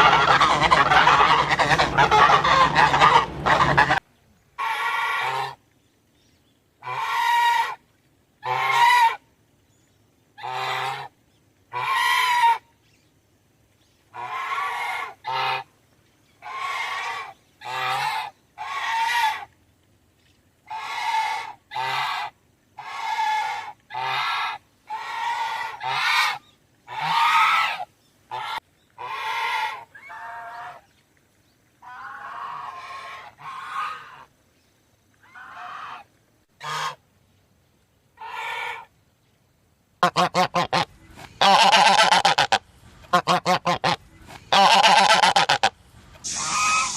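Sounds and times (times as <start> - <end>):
goose honking: 0.0 - 4.0, 4.6 - 5.6, 6.8 - 7.8, 8.4 - 9.2, 11.7 - 12.6, 14.2 - 15.7, 16.4 - 19.5, 20.7 - 30.8, 31.8 - 34.3, 35.3 - 36.0, 36.6 - 37.0, 40.0 - 46.9.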